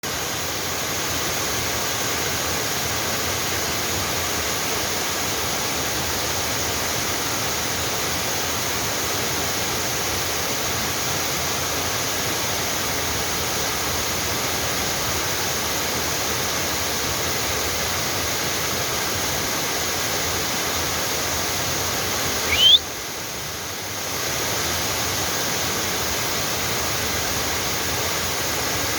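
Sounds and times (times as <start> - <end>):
waterfall rushing: 22.4 - 22.8
short rising squeal: 22.5 - 22.8.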